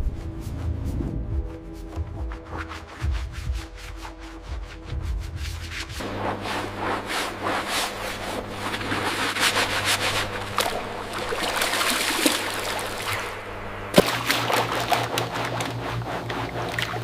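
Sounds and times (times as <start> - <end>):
rustling and scraping: 2.0 - 17.0
low machine hum: 4.5 - 17.0.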